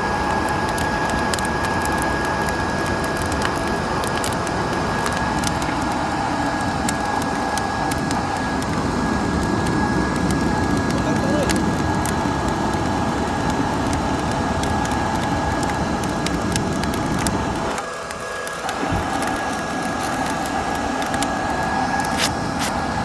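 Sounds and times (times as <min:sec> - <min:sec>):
steady hiss: 0:00.0 - 0:23.0
wood fire crackling: 0:00.0 - 0:23.0
sharp pops: 0:00.3 - 0:23.0.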